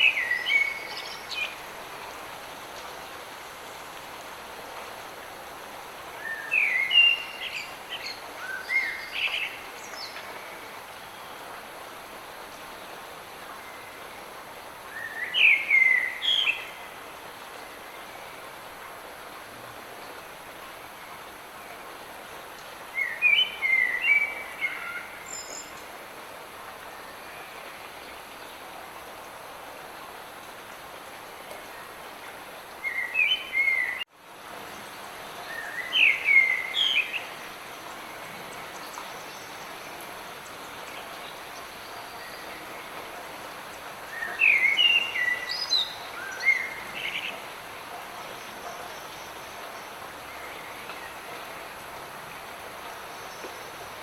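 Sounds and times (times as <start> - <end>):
light rain hissing: 0.0 - 54.0
songbird chirping: 34.7 - 47.5.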